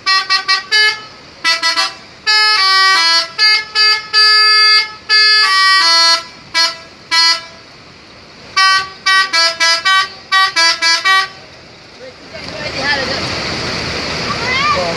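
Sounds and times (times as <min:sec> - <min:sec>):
multi-tone bus horn playing tune: 0:00.0 - 0:07.7, 0:08.5 - 0:11.4.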